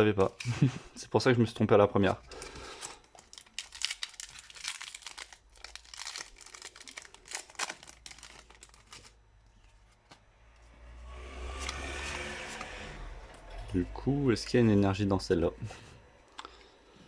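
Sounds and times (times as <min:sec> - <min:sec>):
foil wrapper crinkling and tearing: 0:02.8 - 0:09.2.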